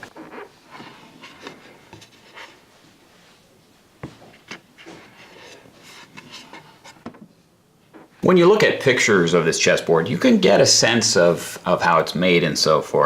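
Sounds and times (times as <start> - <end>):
wooden chessboard rubbing and clicks: 0.0 - 2.7.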